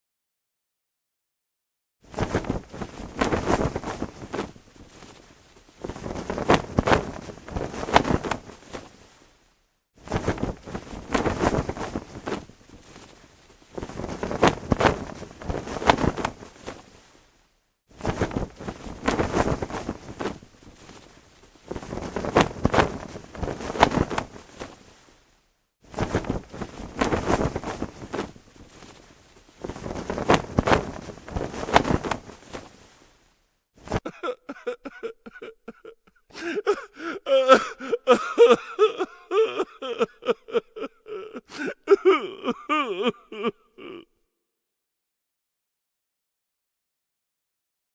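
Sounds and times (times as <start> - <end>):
cloth flag flapping and snapping: 2.0 - 34.1.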